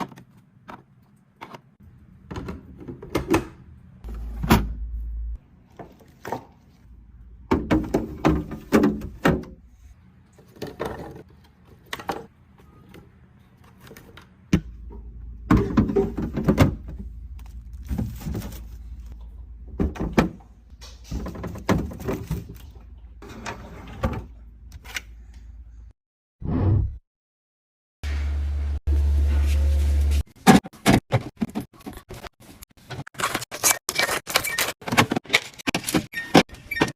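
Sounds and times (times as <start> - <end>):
containers clacking and thunking: 7.4 - 9.6, 10.4 - 12.3, 13.7 - 24.4, 30.4 - 36.9.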